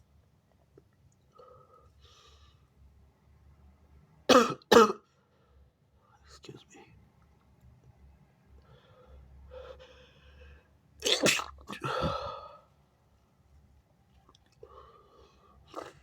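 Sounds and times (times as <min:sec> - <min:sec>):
person sneezing: 0:11.0 - 0:12.4
catching breaths: 0:11.8 - 0:12.7.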